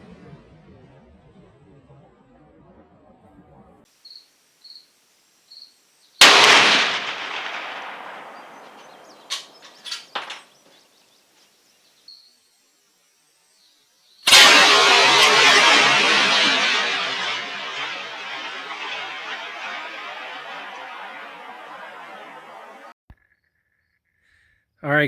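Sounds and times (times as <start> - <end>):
rifle shot: 6.2 - 10.5, 14.3 - 22.9.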